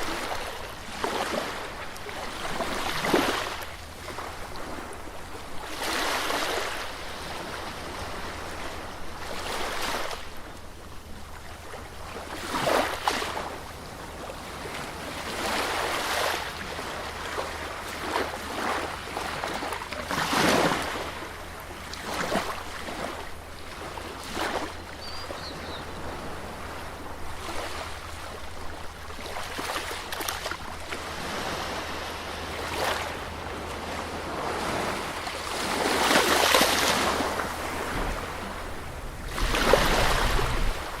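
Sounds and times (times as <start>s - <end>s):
sea waves breaking on beach: 0.0s - 41.0s
low surf rumble: 37.0s - 41.0s.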